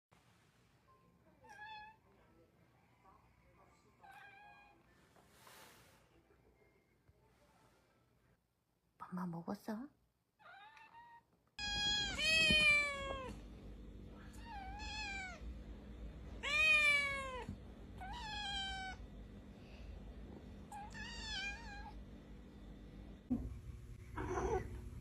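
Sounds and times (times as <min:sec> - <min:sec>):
cat meowing: 0:10.4 - 0:13.4, 0:14.3 - 0:15.4, 0:16.4 - 0:19.0, 0:20.7 - 0:22.0, 0:24.2 - 0:24.8.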